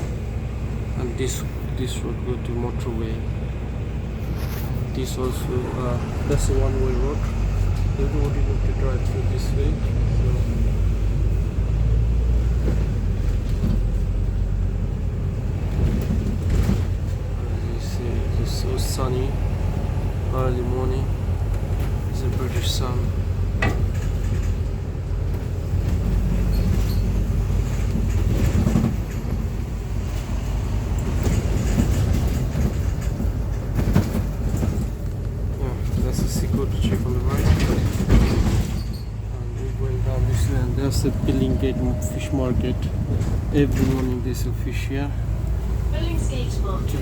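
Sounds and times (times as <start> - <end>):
bus engine and road rumble: 0.0 - 47.0
light rattles: 12.4 - 47.0.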